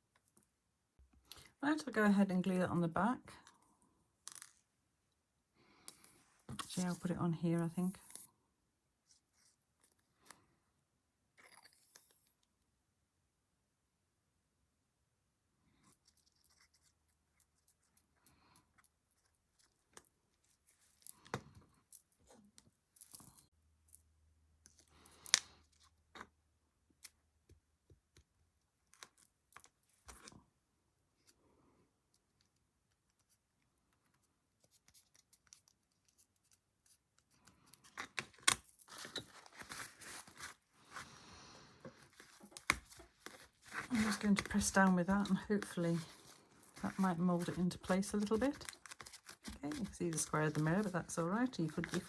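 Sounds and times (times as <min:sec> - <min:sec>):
rustling and crinkling: 0:06.0 - 0:08.3, 0:32.2 - 0:52.0.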